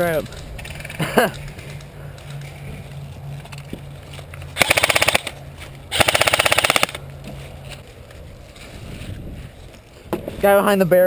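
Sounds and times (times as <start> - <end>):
airsoft gun firing full-auto bursts: 4.6 - 5.3, 5.9 - 7.0.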